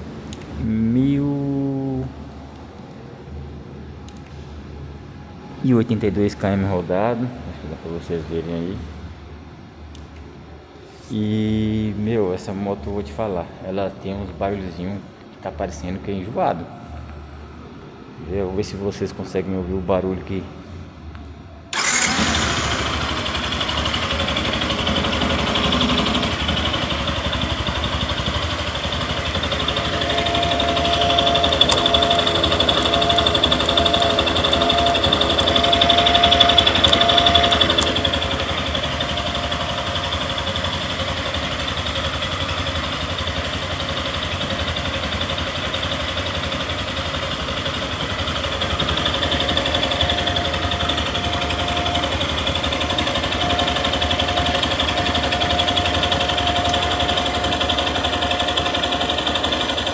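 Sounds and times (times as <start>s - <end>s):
motorcycle engine idling: 21.7s - 59.9s.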